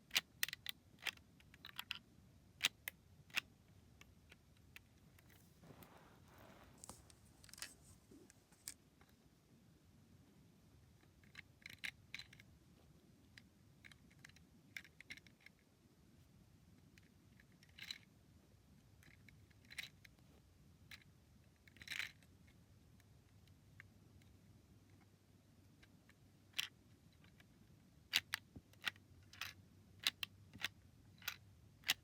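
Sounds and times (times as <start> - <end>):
plastic lego pieces clicking: 0.1 - 2.0.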